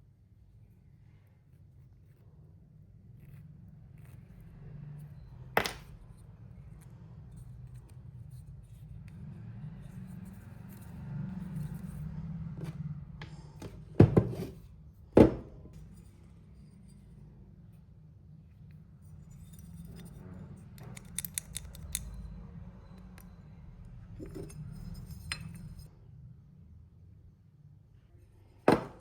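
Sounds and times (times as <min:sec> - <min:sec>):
tools clicking and knocking: 0:19.4 - 0:23.4.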